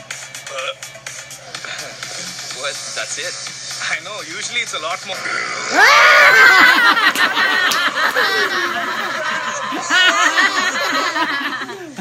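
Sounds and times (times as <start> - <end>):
people laughing: 5.8 - 12.0.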